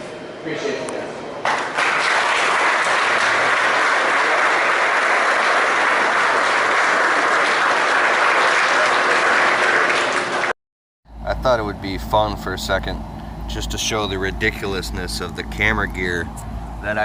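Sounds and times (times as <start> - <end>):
audience applauding: 1.5 - 10.6.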